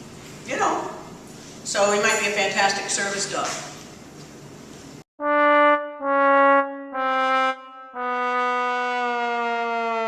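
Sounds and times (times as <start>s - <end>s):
sad trombone sound effect: 5.2s - 10.0s.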